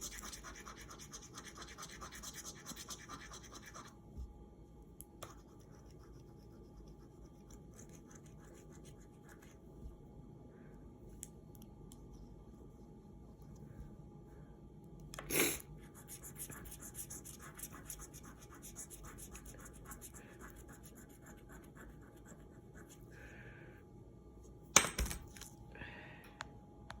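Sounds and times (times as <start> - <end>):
nasal sniffs: 15.3 - 15.6.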